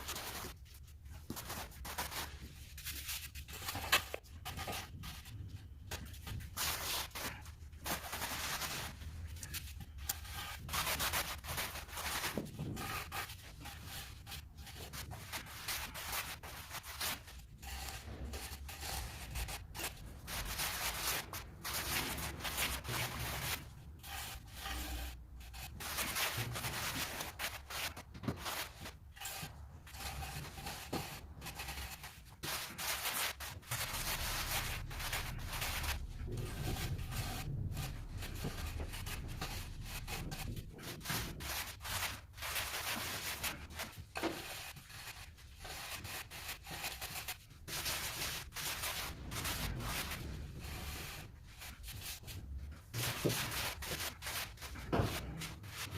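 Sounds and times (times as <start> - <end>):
trowel scraping mortar: 6.0 - 55.9.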